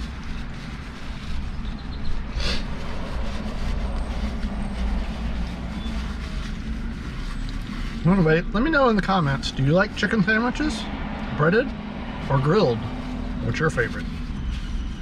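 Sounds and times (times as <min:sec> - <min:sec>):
car interior rumble: 0:00.0 - 0:15.0.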